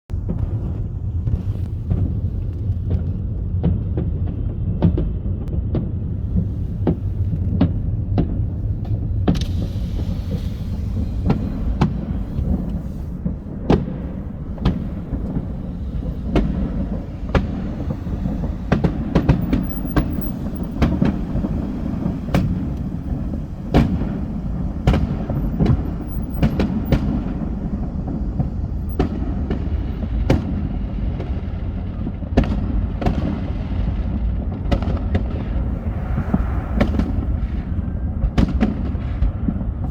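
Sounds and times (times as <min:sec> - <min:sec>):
fireworks bangs and pops: 0:00.1 - 0:39.9
fireworks low rumble: 0:00.1 - 0:39.9
hissing crackle: 0:08.4 - 0:30.8, 0:35.0 - 0:39.2.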